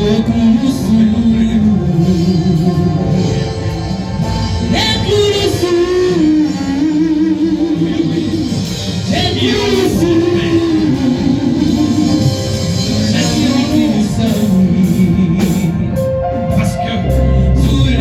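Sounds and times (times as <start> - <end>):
sustained instrumental accompaniment: 0.0 - 18.0
person singing worship melody: 4.6 - 18.0.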